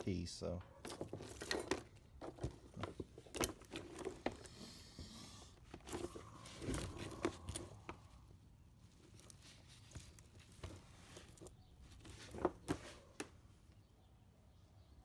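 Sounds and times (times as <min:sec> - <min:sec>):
scrap metal clinks and knocks: 0:00.6 - 0:08.1
crinkly rustling: 0:00.8 - 0:13.2.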